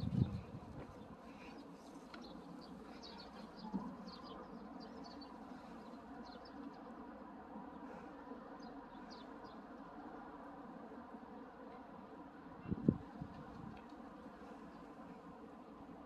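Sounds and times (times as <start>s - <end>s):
small birds chirping: 0.0s - 6.9s.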